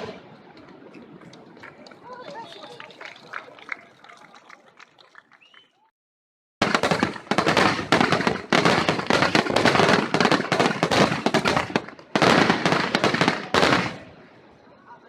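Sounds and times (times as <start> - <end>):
fireworks bangs and crackling: 0.0 - 3.0, 6.6 - 14.6.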